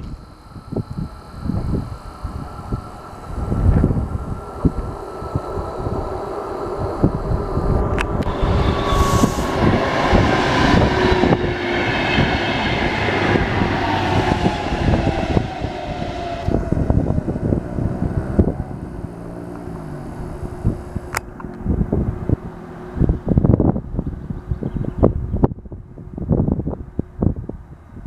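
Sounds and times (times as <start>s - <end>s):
train wheels rumbling on rail: 0.0s - 22.4s
electric train motor whine: 0.0s - 24.0s.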